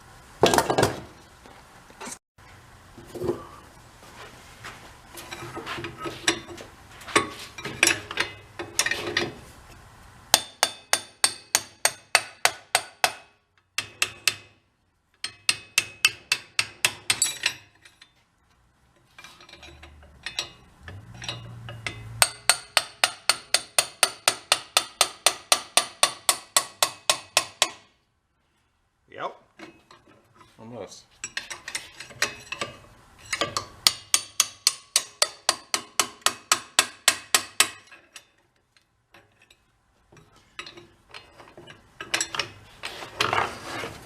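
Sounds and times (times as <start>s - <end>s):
metal clinks and scraping: 5.2s - 9.8s, 15.2s - 18.3s, 18.9s - 23.6s, 29.6s - 44.0s
hammer tapping on metal: 15.2s - 17.5s, 20.3s - 27.9s, 33.4s - 38.0s.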